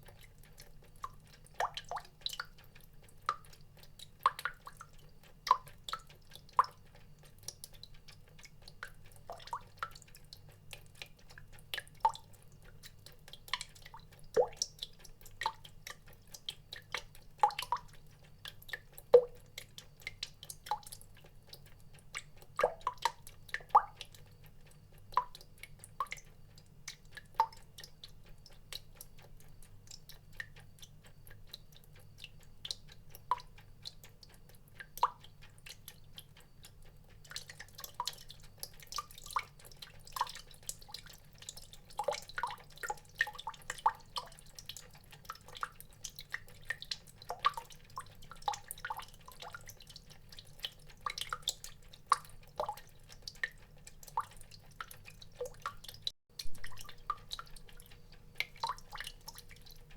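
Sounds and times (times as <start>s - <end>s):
water drops plinking: 56.4s - 57.8s.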